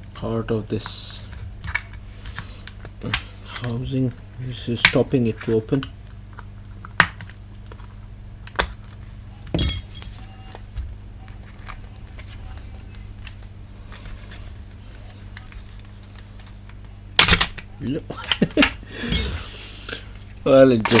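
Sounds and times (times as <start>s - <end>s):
low steady hum: 7.5s - 21.0s.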